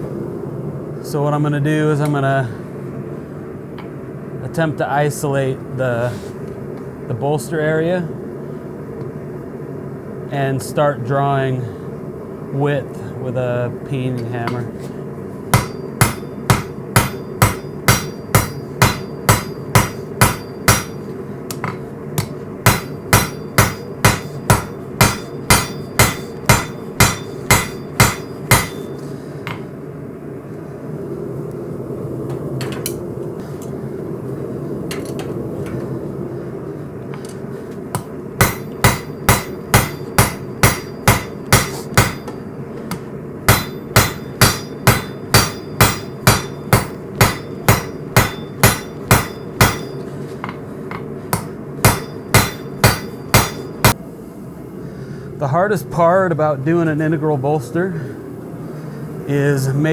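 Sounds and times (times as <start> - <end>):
steady hum: 0.0 - 59.9
hammer striking hot steel: 15.5 - 29.7, 37.9 - 54.0.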